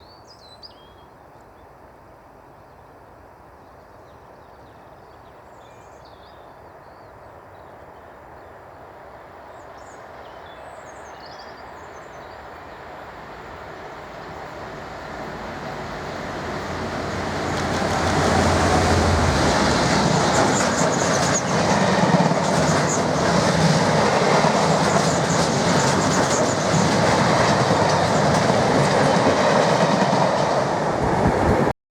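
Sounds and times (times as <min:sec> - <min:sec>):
diesel locomotive passing: 0:11.6 - 0:31.7.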